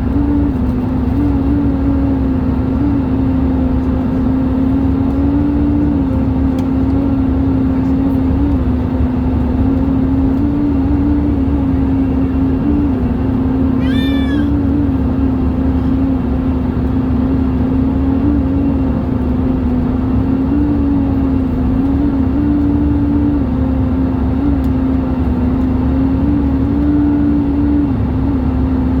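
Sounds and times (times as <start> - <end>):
airplane cabin rush and drone: 0.0 - 29.0
high squeak: 13.8 - 14.6.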